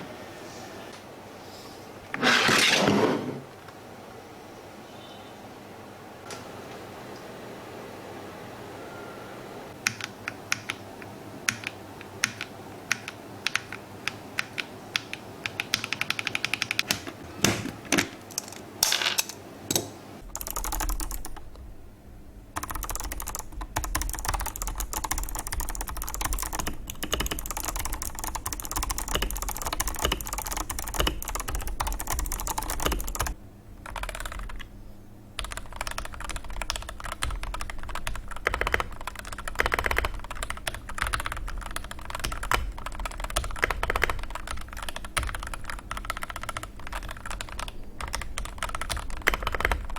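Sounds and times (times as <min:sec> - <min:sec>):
typing on mechanical keyboard: 0:09.8 - 0:10.8, 0:11.5 - 0:17.0, 0:20.2 - 0:21.5, 0:22.6 - 0:34.7, 0:35.4 - 0:49.9.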